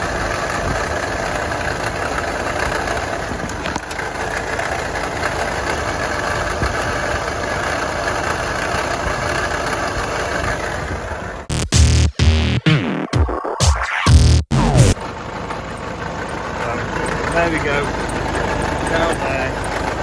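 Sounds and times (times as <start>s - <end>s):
diesel engine idling: 15.0s - 20.0s.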